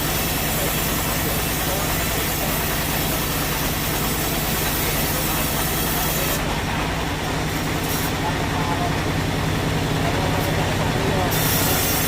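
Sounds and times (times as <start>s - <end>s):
sawmill machinery humming: 0.0s - 12.0s.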